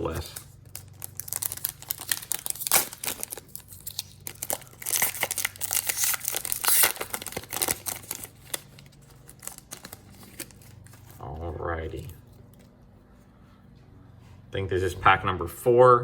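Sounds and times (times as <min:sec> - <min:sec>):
card pack wrapper crinkling and tearing: 0:00.0 - 0:12.7.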